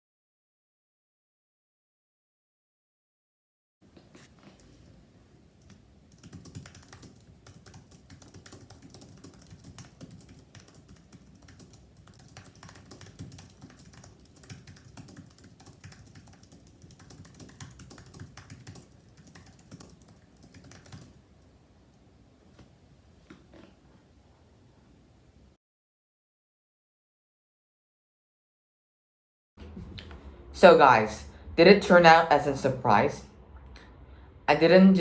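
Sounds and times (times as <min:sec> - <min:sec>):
fast typing on keyboard: 0:05.6 - 0:21.2.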